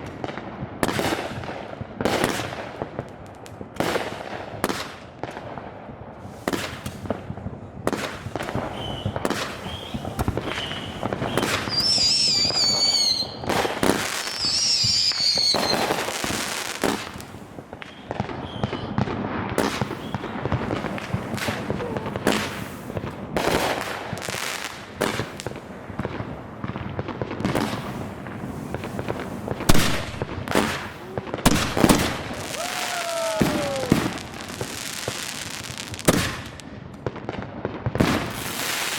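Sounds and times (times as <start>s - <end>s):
fireworks bursting: 0.0s - 38.9s
high warbling firework whistles: 8.6s - 13.5s, 14.2s - 16.0s, 31.0s - 36.5s.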